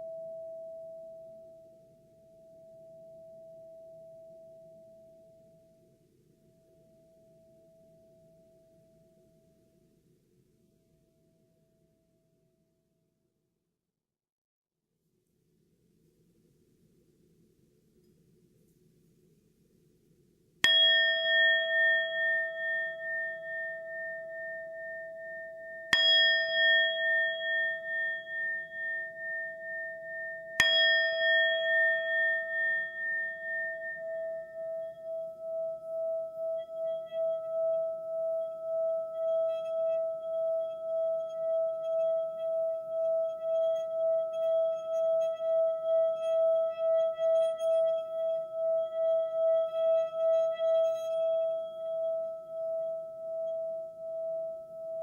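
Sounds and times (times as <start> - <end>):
singing bowl ringing: 0.0 - 5.7, 20.6 - 55.0.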